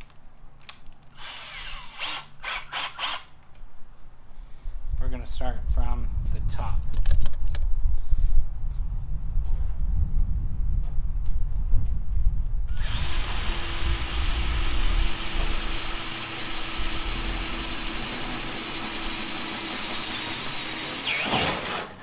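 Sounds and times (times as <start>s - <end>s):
power drill boring: 1.2s - 3.3s, 12.7s - 21.4s
low rumble: 4.7s - 19.3s.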